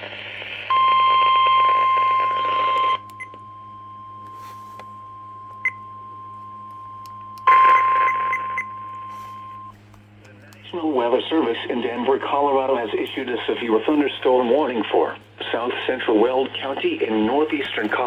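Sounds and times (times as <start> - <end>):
radio static: 10.2 - 18.0.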